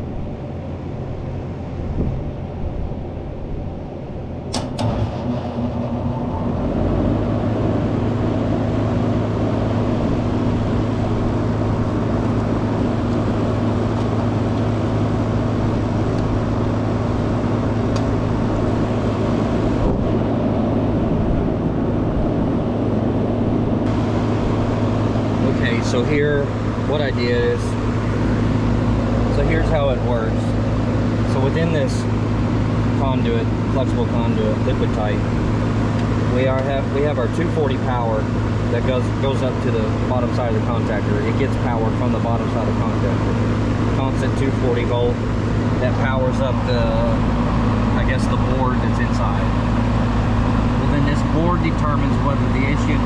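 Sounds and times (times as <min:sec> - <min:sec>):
compressor and fan humming: 0:00.0 - 0:53.0
sharp click: 0:04.5 - 0:05.0.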